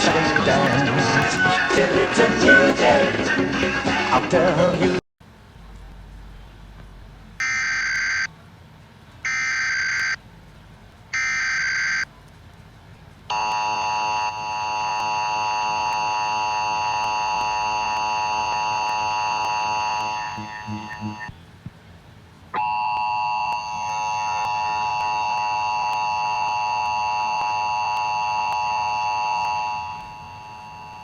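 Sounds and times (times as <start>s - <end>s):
data warble bursts: 7.4s - 8.3s, 13.4s - 21.3s
two-tone attention signal: 13.3s - 21.4s, 22.6s - 31.0s.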